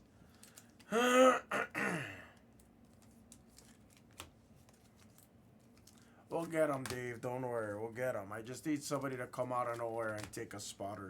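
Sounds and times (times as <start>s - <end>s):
man clearing his throat: 0.9s - 2.3s.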